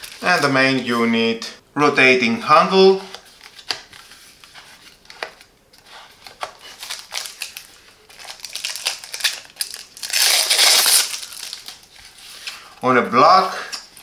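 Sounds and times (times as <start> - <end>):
plastic packaging crinkling: 0.0 - 0.5, 3.0 - 12.6.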